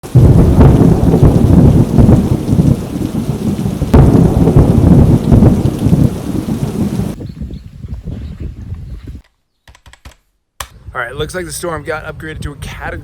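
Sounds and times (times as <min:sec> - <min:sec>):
heavy rain: 0:00.0 - 0:07.2
surging low rumble: 0:00.0 - 0:07.2.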